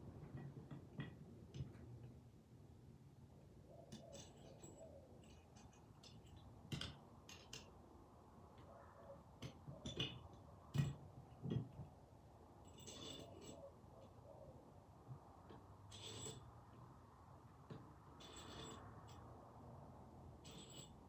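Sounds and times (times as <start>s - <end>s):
small metal parts clinking: 3.9s - 7.7s, 12.6s - 13.6s, 15.9s - 16.5s, 18.2s - 19.2s.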